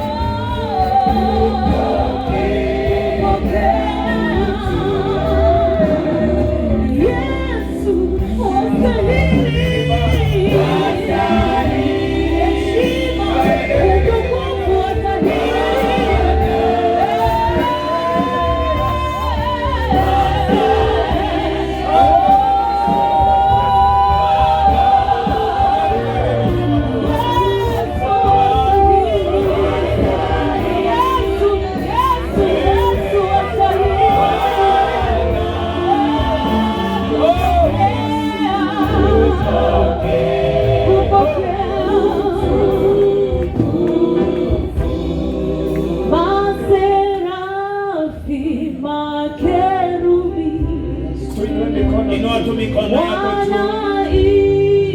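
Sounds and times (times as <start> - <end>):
music with low bass: 0.0 - 47.3
group singing worship song: 0.0 - 54.9.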